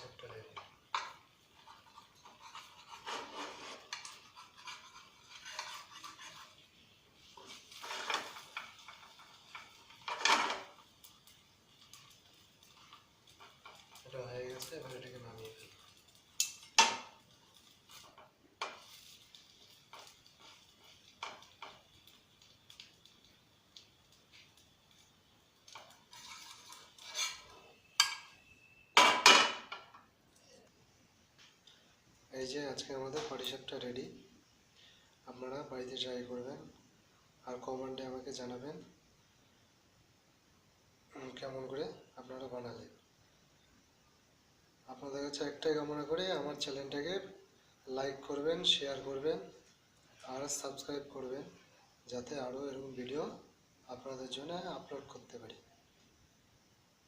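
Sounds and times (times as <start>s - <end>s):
metal utensils scraping cookware: 1.0s - 6.6s, 7.7s - 10.7s, 25.8s - 28.4s
spatula scraping a pan: 1.0s - 22.2s, 25.7s - 28.4s.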